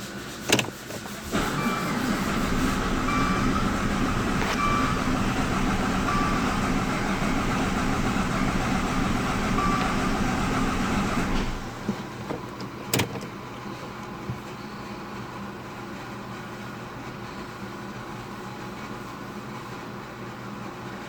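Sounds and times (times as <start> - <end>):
car engine running: 1.3 - 12.3.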